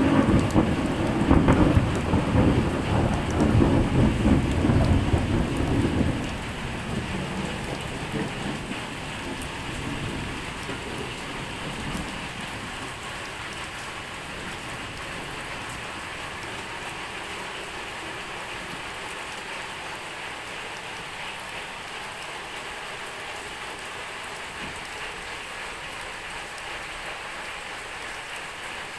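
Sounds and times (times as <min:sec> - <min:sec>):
low thunder rumble: 0:00.0 - 0:19.1
steady rain falling: 0:00.0 - 0:28.9.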